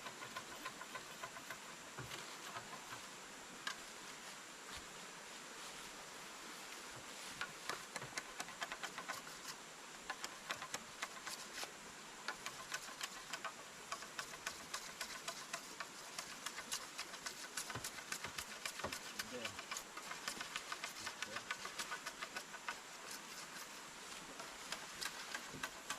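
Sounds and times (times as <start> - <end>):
small river rushing: 0.0 - 25.9.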